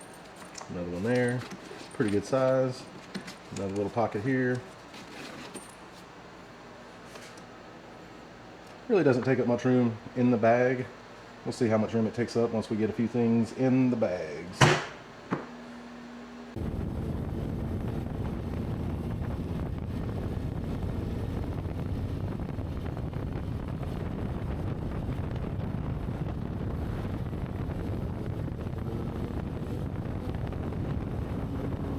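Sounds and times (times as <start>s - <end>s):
wind buffeting microphone: 16.6s - 31.9s.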